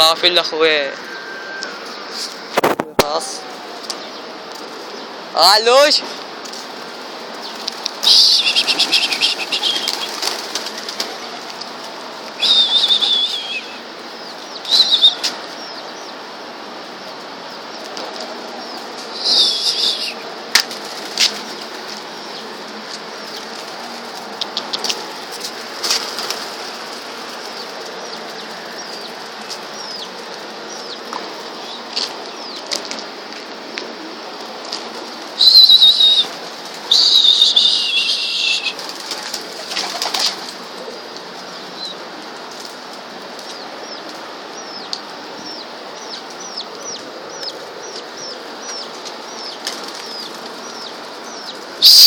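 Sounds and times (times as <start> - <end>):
whistle-like wing tones: 1.0 - 1.8, 8.0 - 10.1, 12.4 - 13.8, 19.2 - 20.2, 35.4 - 36.3, 36.9 - 38.8, 51.8 - 52.0
pigeons flapping wings: 6.4 - 13.4, 20.5 - 22.2, 23.2 - 29.8, 34.6 - 40.8, 49.6 - 50.6.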